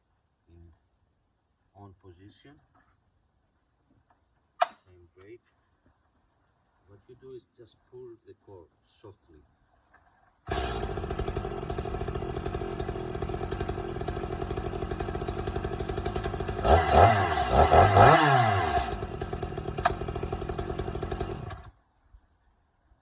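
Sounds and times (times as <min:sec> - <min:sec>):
chainsaw engine idling and revving: 0:10.5 - 0:21.7.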